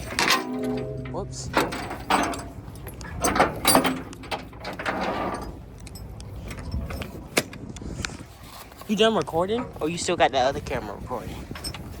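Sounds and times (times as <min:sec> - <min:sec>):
gear knocking and rattling: 0:00.0 - 0:06.1.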